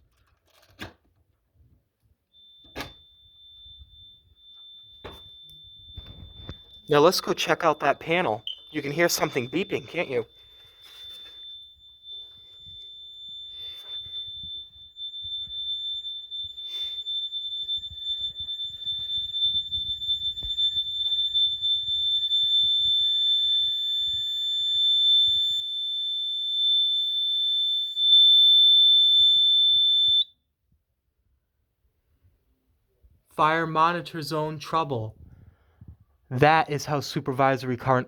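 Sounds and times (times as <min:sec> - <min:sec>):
high-pitched alarm panel tone: 0:02.4 - 0:24.7.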